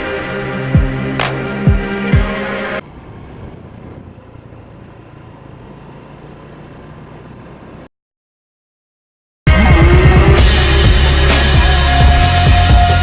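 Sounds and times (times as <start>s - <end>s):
music: 0.0s - 2.8s, 9.5s - 13.0s.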